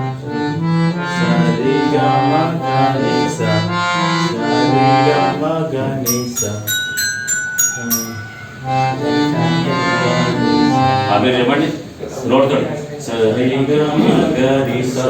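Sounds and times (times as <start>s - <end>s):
electronic keyboard melody: 6.1s - 10.0s
ringing bell strikes: 6.1s - 10.2s.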